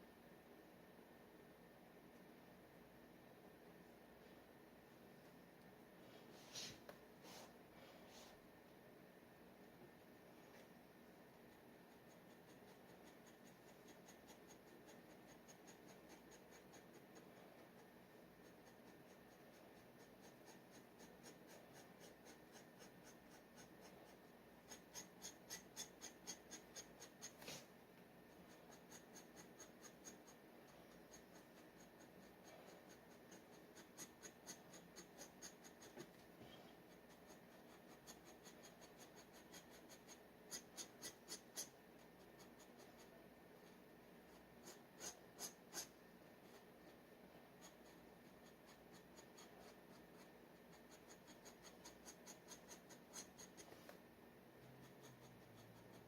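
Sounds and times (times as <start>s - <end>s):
dip pen scratching on paper: 11.3s - 54.0s, 54.6s - 56.0s.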